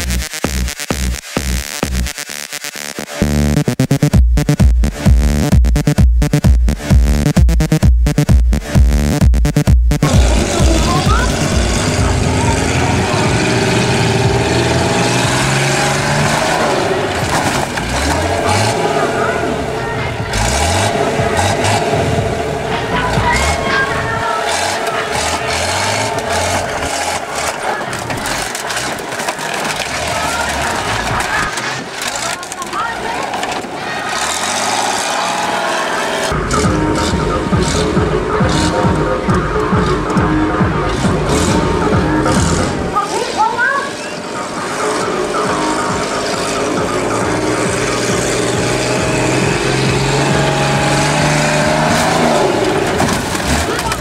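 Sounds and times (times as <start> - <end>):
vehicle engine running loudly: 3.2 - 54.0
low rumble: 4.2 - 31.9.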